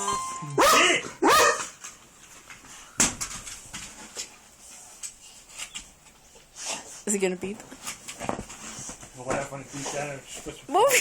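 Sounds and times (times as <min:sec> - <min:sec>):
faint taps and scuffs: 0:07.6 - 0:10.6.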